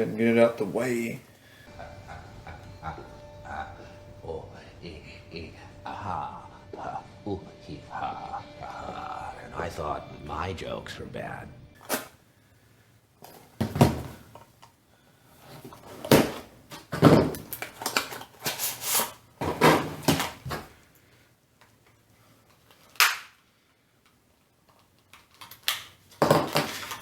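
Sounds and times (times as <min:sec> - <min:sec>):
packaging crinkling and rustling: 0:15.4 - 0:20.9, 0:24.6 - 0:27.0
sharp plastic snap: 0:23.0 - 0:23.4.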